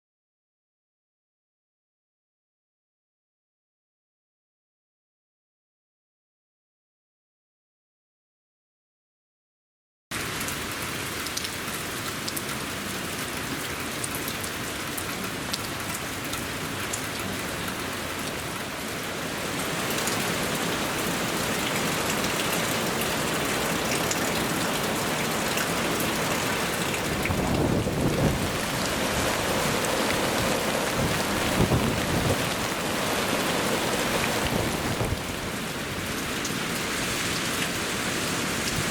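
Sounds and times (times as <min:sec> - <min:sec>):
heavy rain pouring: 0:10.1 - 0:38.9
raindrops ticking: 0:19.8 - 0:31.8.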